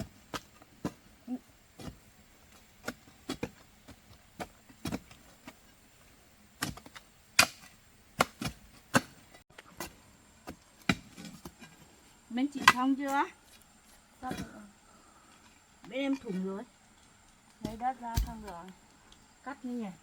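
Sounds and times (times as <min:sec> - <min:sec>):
hoe chopping into earth: 0:06.6 - 0:09.2, 0:10.8 - 0:11.5, 0:17.6 - 0:18.6.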